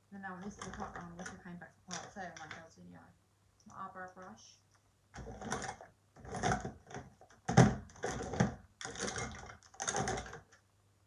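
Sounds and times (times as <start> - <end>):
makeup brushes clattering: 0.3 - 2.8, 5.2 - 10.6.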